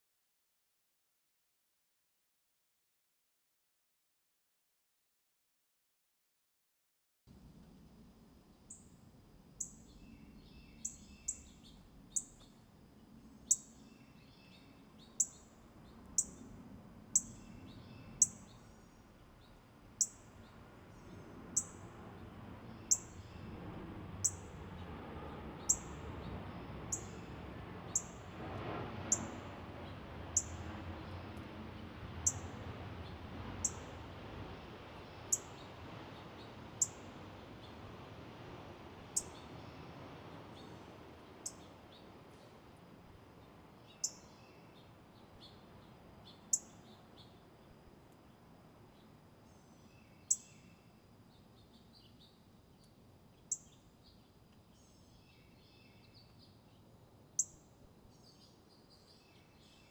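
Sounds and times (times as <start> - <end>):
faint lower bird chirps: 8.5 - 9.0, 9.6 - 12.7, 13.4 - 16.5, 17.1 - 21.8, 22.7 - 23.5, 32.2 - 32.5, 33.6 - 33.9, 35.2 - 35.6, 36.8 - 37.1, 39.2 - 39.8, 41.4 - 42.5, 43.8 - 47.5, 48.9 - 59.9.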